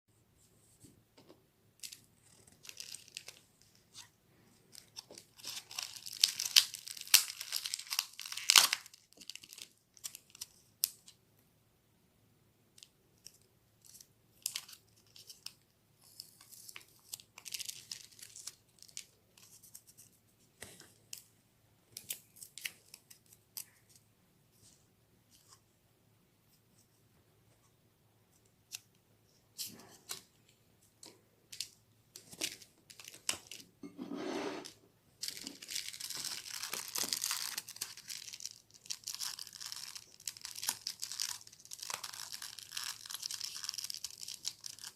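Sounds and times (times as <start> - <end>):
plastic packaging crinkling: 1.8 - 4.1, 4.7 - 10.7, 13.9 - 19.9, 31.5 - 33.6, 34.6 - 44.9.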